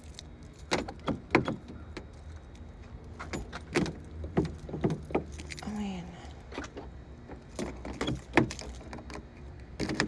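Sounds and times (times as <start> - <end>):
keys jangling: 2.1 - 5.9.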